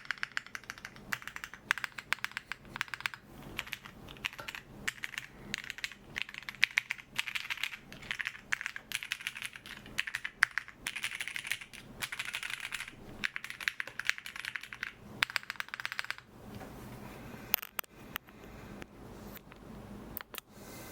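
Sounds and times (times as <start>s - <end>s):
mechanical keyboard typing: 0.0s - 16.3s.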